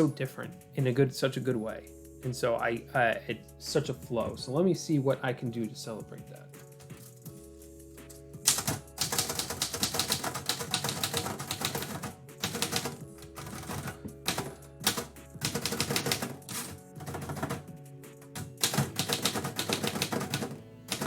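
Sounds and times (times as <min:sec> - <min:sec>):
typewriter keys striking: 0:08.4 - 0:21.0.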